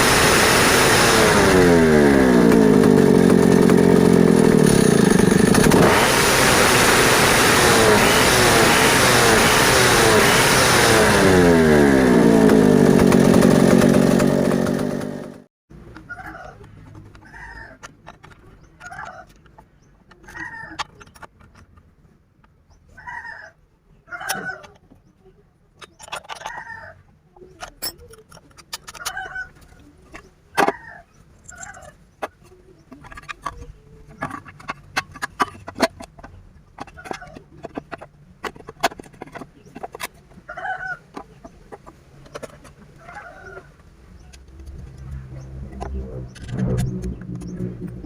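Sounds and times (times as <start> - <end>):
chickens clucking: 15.9 - 21.4, 22.8 - 46.3
low steady hum: 43.7 - 48.0.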